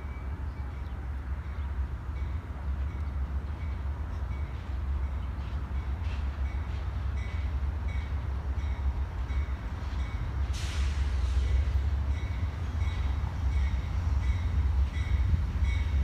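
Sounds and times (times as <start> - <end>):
train rumbling past: 0.0 - 16.0.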